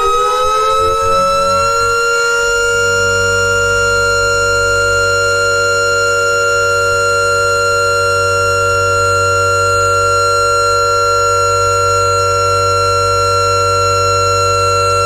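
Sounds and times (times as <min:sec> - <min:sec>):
air-raid siren steady tone: 0:00.0 - 0:15.0
low hum: 0:00.0 - 0:15.0.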